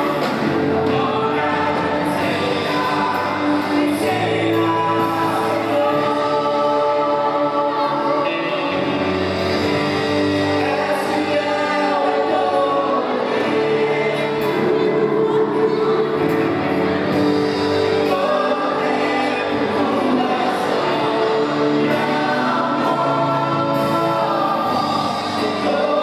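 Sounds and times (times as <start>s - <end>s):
group of voices singing: 0.0s - 26.0s.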